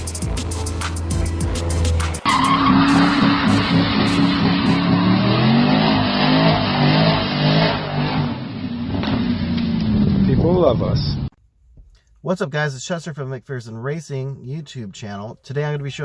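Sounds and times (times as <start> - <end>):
music playing: 0.0 - 5.0
car engine revving: 0.0 - 11.3.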